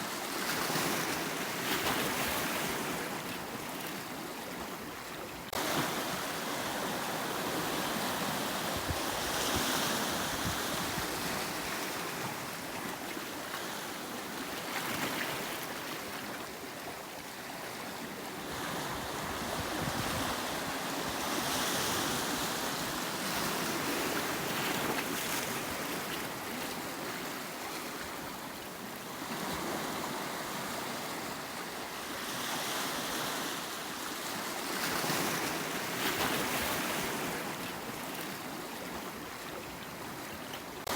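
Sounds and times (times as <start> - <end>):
waves breaking on rocky shore: 0.1 - 16.8.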